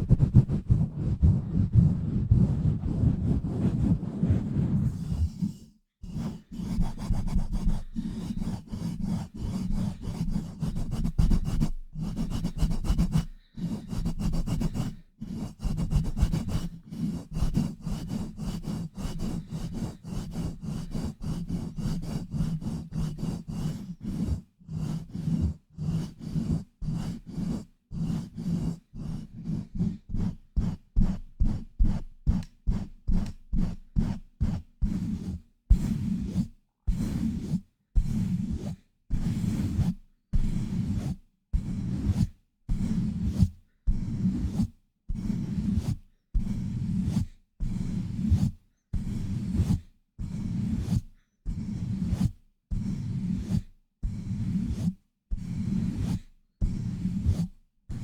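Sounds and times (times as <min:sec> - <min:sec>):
hands rubbing on microphone: 0:00.0 - 0:05.6.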